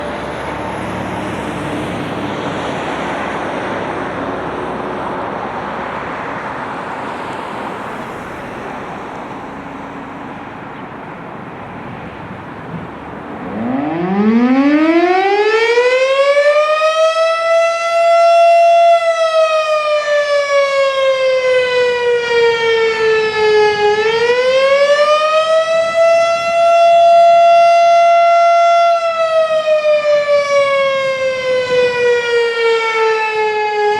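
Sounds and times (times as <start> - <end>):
rushing background noise: 0.0 - 15.2
fire siren wailing: 0.0 - 33.9.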